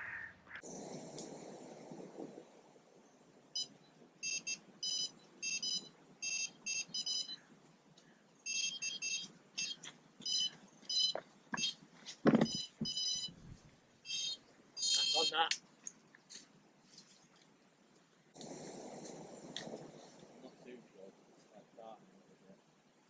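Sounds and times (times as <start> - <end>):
bite alarm beeping: 3.6 - 7.4, 8.5 - 11.8, 12.4 - 13.4, 14.0 - 15.5.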